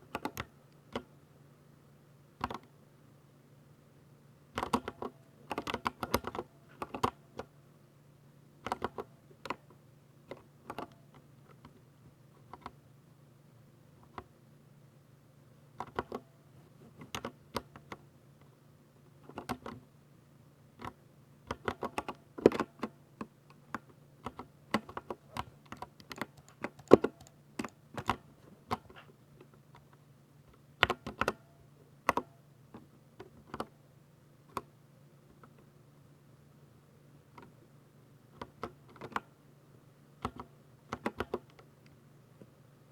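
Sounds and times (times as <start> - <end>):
faint low hum: 0.0 - 42.9
mechanical keyboard typing: 0.1 - 1.1, 2.4 - 2.7, 4.6 - 7.2, 8.6 - 9.6, 15.8 - 16.2, 17.0 - 18.0, 19.2 - 19.8, 20.8 - 22.9, 23.7 - 29.0, 30.8 - 31.4, 40.2 - 41.6.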